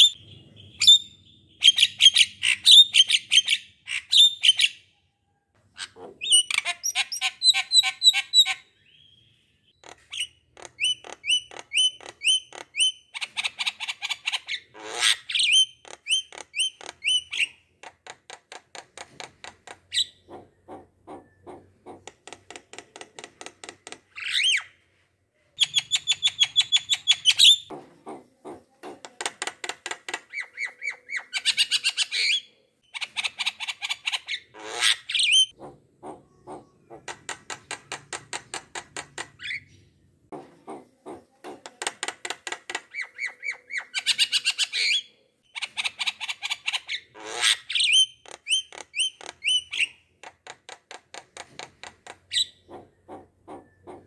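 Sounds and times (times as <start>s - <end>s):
bird squawks: 30.4s - 37.2s, 40.3s - 41.7s, 52.3s - 54.0s.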